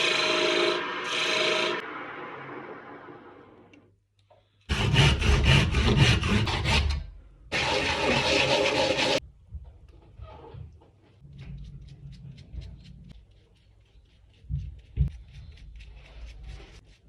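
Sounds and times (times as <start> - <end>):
turning tool rubbing spinning wood: 7.5 - 9.2.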